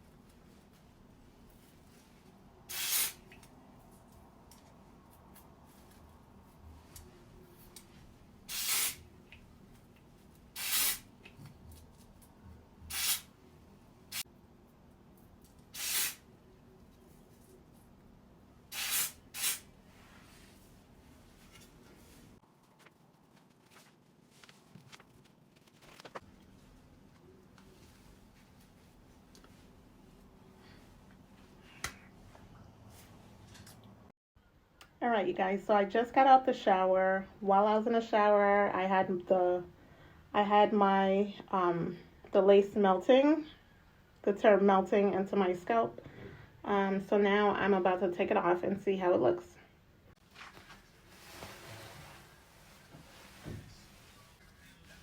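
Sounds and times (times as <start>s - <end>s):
spray hissing bursts: 2.7s - 3.2s, 8.5s - 9.0s, 10.6s - 11.0s, 12.9s - 13.3s, 15.8s - 16.2s, 18.7s - 19.7s.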